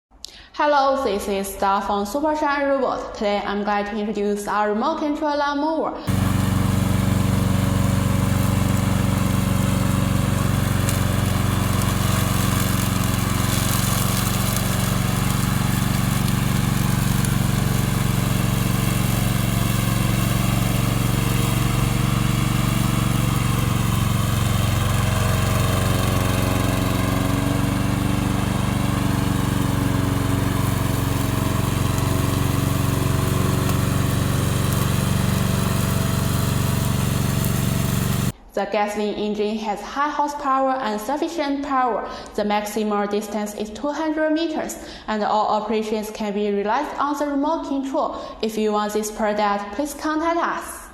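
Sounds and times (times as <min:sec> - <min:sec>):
lawn mower engine running: 0:06.1 - 0:38.4.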